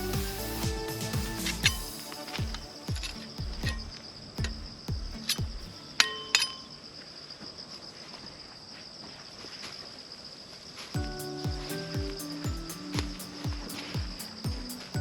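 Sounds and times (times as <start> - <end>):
music with thumping beat: 0.0 - 5.7, 11.0 - 15.0
high-pitched insect drone: 11.0 - 15.0.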